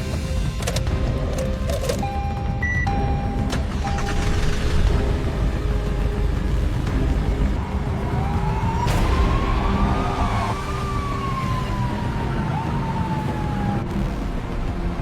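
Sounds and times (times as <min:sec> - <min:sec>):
police siren wailing: 0:07.6 - 0:14.2.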